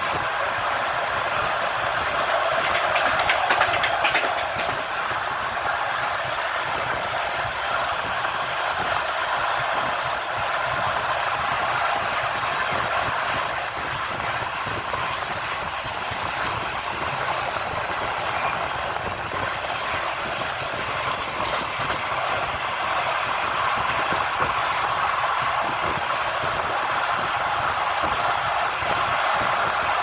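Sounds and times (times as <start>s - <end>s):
train wheels rumbling on rails: 0.0s - 30.0s.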